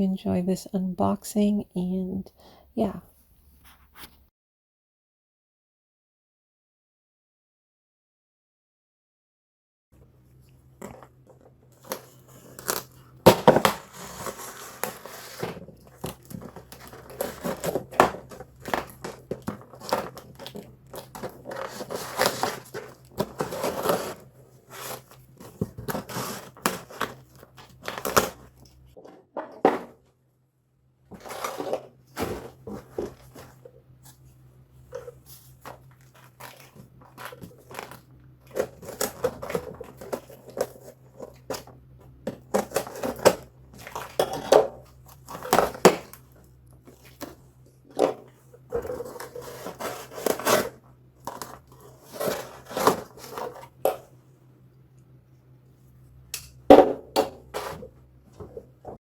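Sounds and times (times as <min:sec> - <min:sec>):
cardboard packaging tearing and rustling: 0:11.7 - 0:28.5, 0:31.1 - 0:33.6, 0:34.9 - 0:41.7, 0:42.3 - 0:47.4, 0:48.0 - 0:53.9.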